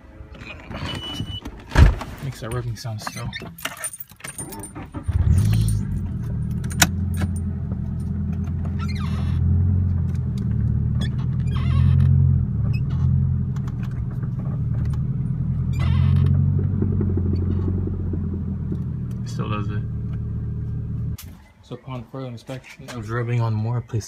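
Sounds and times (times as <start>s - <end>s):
van engine running: 4.8s - 21.2s
tire scraping: 5.0s - 21.2s.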